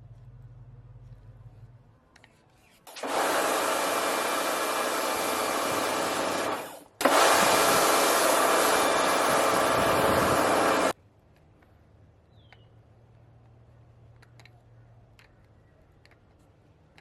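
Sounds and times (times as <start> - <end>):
pressure washer spraying: 2.9 - 11.0.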